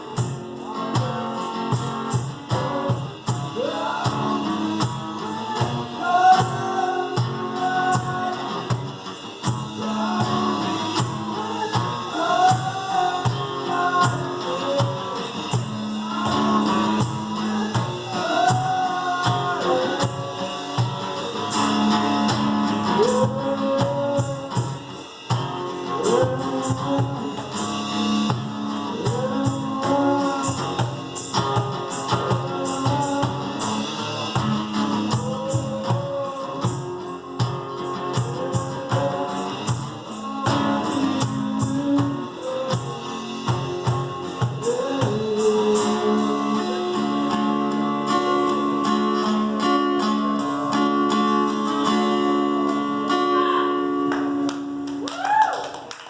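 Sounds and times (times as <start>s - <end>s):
percussion on a steady beat: 0.0s - 52.4s
acoustic guitar: 0.0s - 55.4s.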